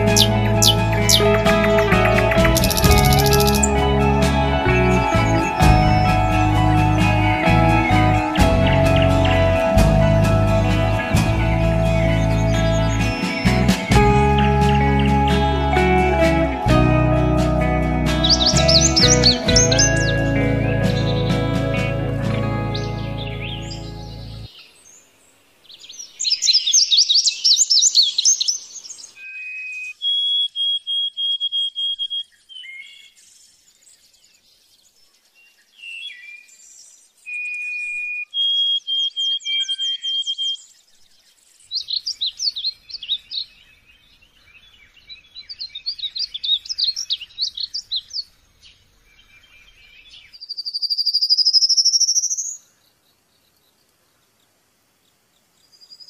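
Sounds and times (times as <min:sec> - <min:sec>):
bird song trills and whistles: 0:00.0 - 0:03.8, 0:18.2 - 0:20.3, 0:25.7 - 0:53.5, 0:55.6 - 0:56.0.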